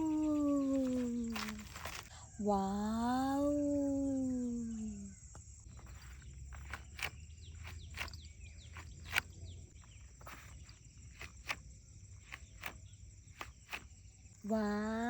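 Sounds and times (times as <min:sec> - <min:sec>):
quick falling chirps: 0:00.0 - 0:03.0, 0:04.1 - 0:15.0
high-pitched insect drone: 0:00.0 - 0:06.1
sharp clicks and snaps: 0:12.2 - 0:13.9.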